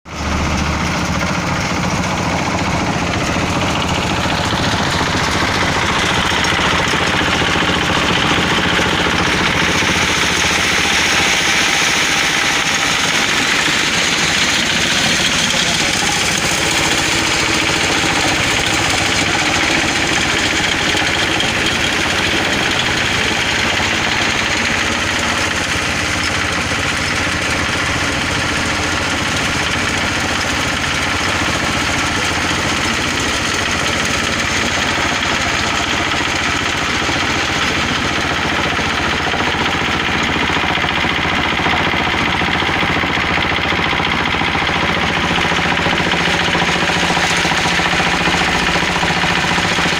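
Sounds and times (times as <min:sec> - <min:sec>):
diesel engine knocking steadily: 0:00.0 - 0:49.9.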